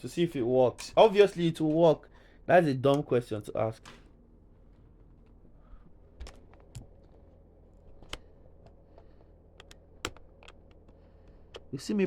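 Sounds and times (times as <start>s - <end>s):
plug clicking against ports: 9.6s - 11.7s.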